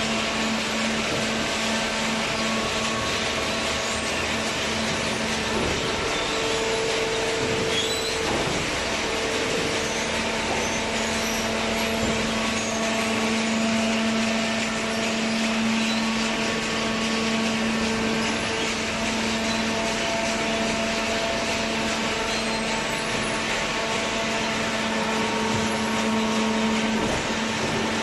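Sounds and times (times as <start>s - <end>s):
baler machine hum: 0.0s - 28.0s.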